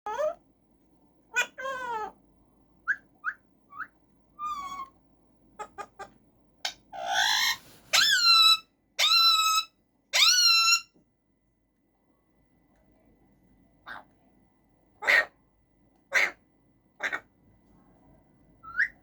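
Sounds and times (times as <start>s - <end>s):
parakeet chirps and calls: 2.8s - 5.0s, 5.6s - 10.9s, 17.0s - 17.3s, 18.6s - 19.0s
long loud parakeet calls: 5.6s - 10.9s, 15.0s - 15.4s, 16.1s - 16.4s, 17.0s - 17.3s.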